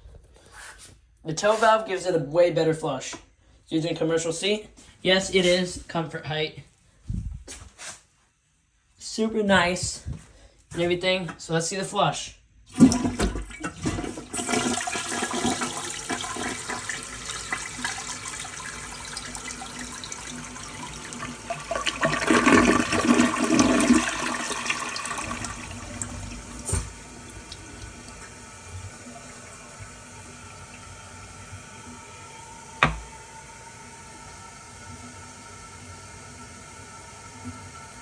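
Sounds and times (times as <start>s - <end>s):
toilet flushing: 12.7s - 38.0s.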